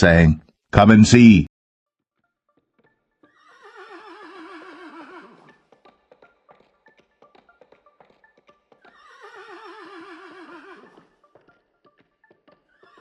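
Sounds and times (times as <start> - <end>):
horse whinnying: 3.3 - 5.6, 8.8 - 11.1, 12.8 - 13.0
hooves clip-clopping: 5.0 - 13.0.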